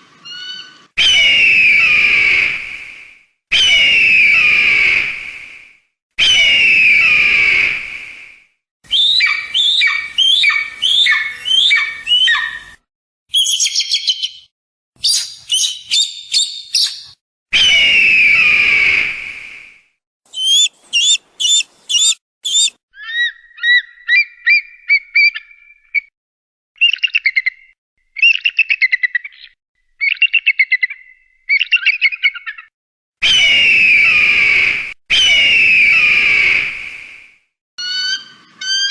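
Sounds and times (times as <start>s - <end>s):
eagle scream: 0.3s - 2.6s, 3.5s - 5.1s, 6.2s - 7.8s, 8.9s - 12.8s, 20.3s - 23.8s, 33.2s - 36.7s
eagle calls: 8.9s - 12.8s, 20.3s - 25.5s.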